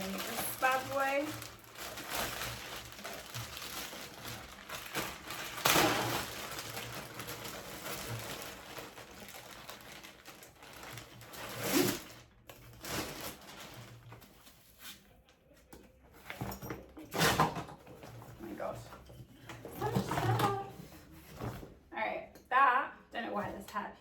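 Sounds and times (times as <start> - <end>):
gear rustling in a bag: 0.0 - 14.6.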